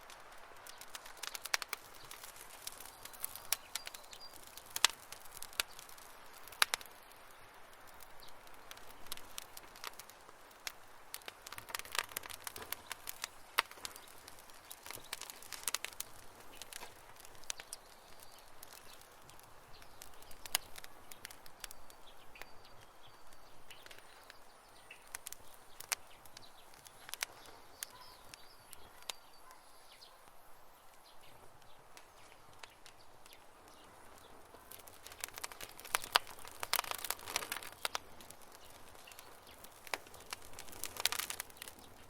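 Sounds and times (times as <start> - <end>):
wood campfire crackling: 0.0 - 42.0
faint bird chirps: 2.0 - 6.0, 17.4 - 38.0.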